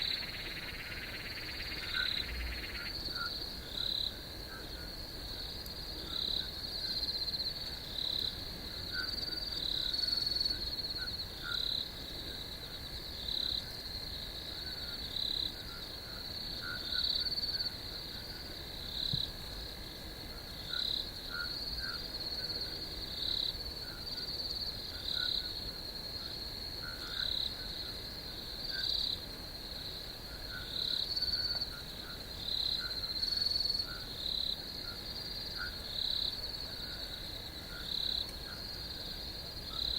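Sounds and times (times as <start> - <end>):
insects high-pitched trilling: 0.0 - 4.9
short low frog calls: 0.0 - 5.0.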